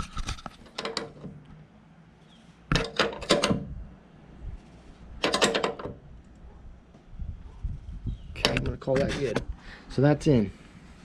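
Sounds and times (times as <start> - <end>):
metal clicks and knocks: 0.0 - 1.5, 2.7 - 3.8, 5.2 - 6.3, 8.4 - 9.5.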